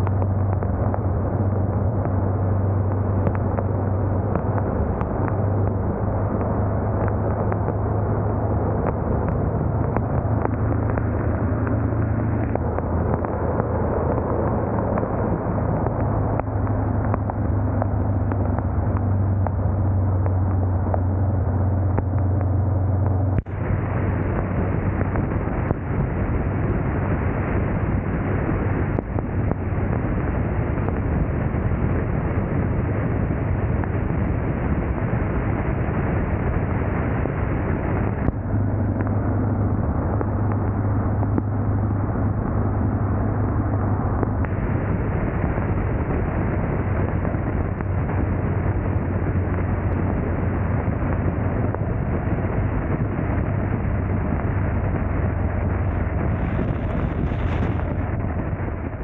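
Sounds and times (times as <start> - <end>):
wind rushing over microphone: 0.0 - 59.0
motorcycle engine running: 37.6 - 59.0.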